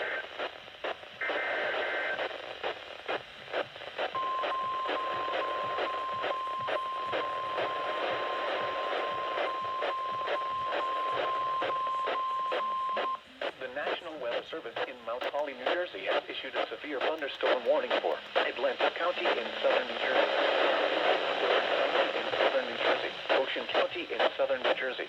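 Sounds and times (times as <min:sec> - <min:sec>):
crackling radio static: 0:00.0 - 0:25.0
steady warning alarm tone: 0:04.2 - 0:13.2.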